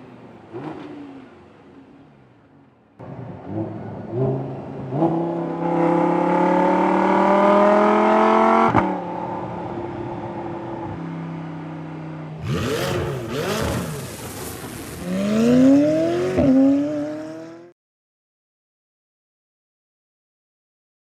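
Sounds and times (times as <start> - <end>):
sports car engine accelerating: 0.0 - 2.4, 3.0 - 17.8
rushing hiss: 12.8 - 16.2.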